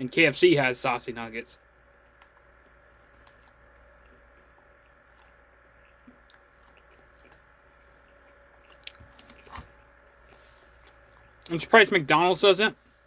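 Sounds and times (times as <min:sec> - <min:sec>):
low steady hum: 0:00.0 - 0:13.0
person chewing: 0:01.6 - 0:11.5.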